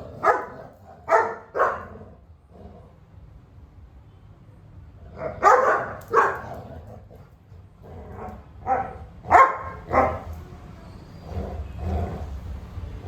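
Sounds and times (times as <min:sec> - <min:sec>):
dog barking in yappy bursts: 0:00.0 - 0:01.9, 0:05.3 - 0:06.6, 0:08.6 - 0:10.3.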